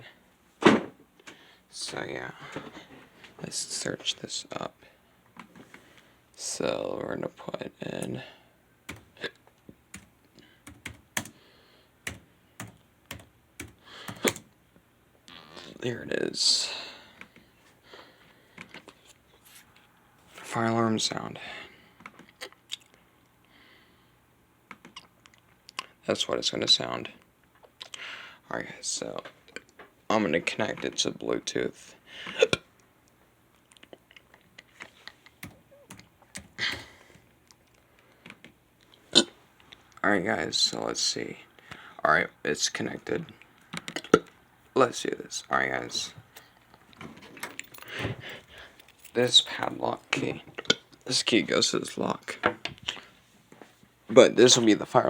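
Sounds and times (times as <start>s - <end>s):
typing on computer keyboard: 9.9s - 11.4s, 12.1s - 14.5s.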